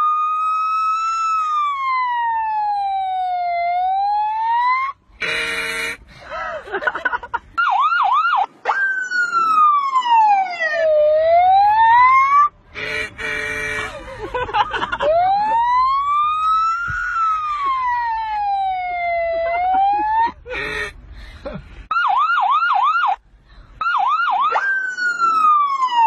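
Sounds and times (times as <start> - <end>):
boy imitating police siren: 0.0 - 5.0, 7.6 - 12.5, 15.0 - 20.9, 23.8 - 26.0.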